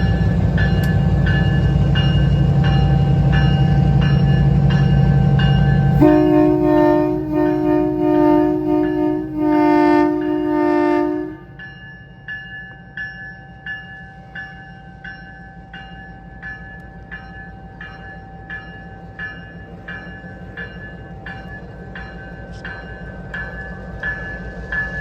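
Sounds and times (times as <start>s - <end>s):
locomotive bell ringing: 0.0s - 25.0s
train horn chord: 5.8s - 11.6s
locomotive engine rumble: 16.5s - 25.0s.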